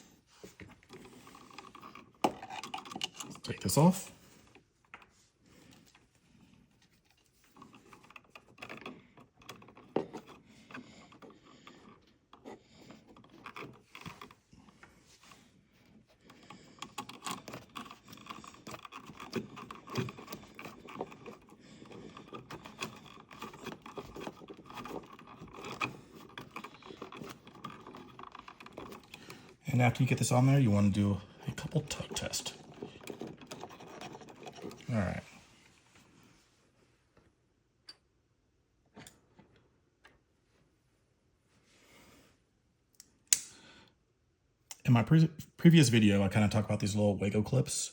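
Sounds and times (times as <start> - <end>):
electrical wires being handled: 0.0 - 36.1.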